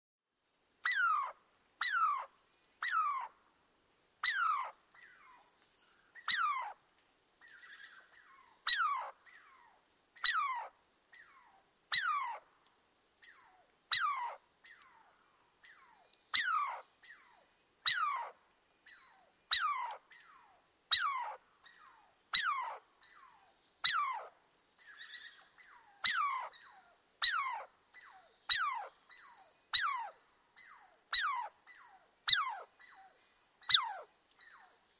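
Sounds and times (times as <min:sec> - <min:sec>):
squirrel barking calls: 0:00.8 - 0:03.3, 0:04.2 - 0:05.4, 0:06.3 - 0:06.8, 0:07.6 - 0:12.4, 0:13.3 - 0:14.4, 0:15.7 - 0:17.2, 0:17.8 - 0:24.3, 0:24.9 - 0:34.7.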